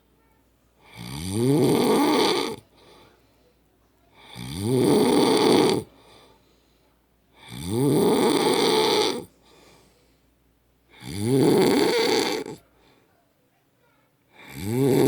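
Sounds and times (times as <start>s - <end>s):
man snoring loudly: 0.9s - 2.6s, 4.3s - 5.9s, 7.4s - 9.3s, 11.0s - 12.6s, 14.4s - 15.0s
faint breath out: 2.6s - 4.5s, 5.8s - 7.6s, 9.2s - 11.0s, 12.5s - 13.2s.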